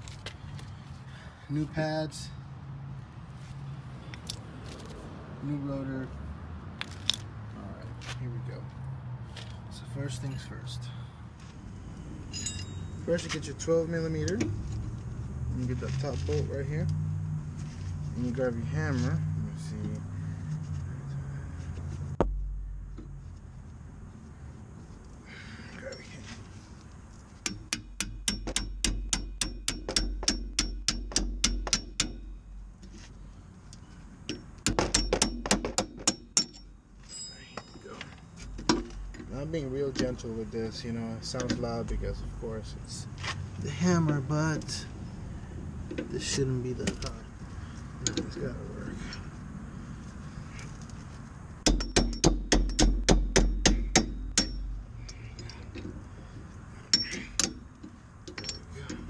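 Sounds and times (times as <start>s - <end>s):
hammer tapping on metal: 27.4s - 32.3s, 51.6s - 54.7s.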